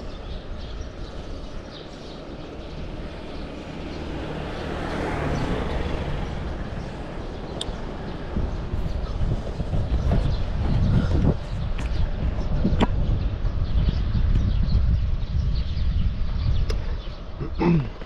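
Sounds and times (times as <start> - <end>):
road noise: 0.0 - 18.0
wind: 0.0 - 18.0
motor vehicle passing: 1.1 - 13.6.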